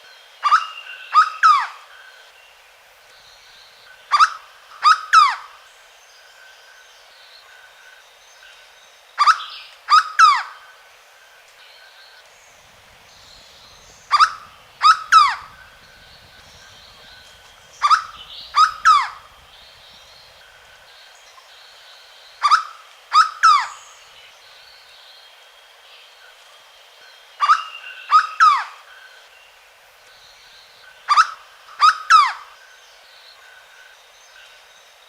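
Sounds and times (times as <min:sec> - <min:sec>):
faint birds or insects: 0:00.0 - 0:35.0
bird calling three-note phrases: 0:12.6 - 0:20.5.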